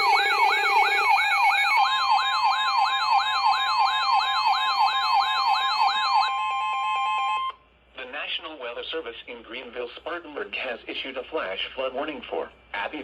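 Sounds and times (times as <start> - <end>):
beeping tones: 0.0 - 6.4
electronic siren yelping: 0.0 - 7.6.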